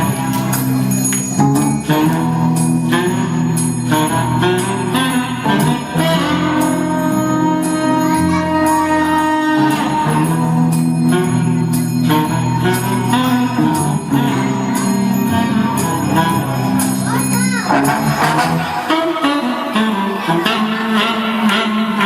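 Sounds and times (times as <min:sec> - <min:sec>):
jingling bells: 0:00.0 - 0:04.6, 0:10.9 - 0:19.8
sustained pitched notes: 0:17.6 - 0:20.7.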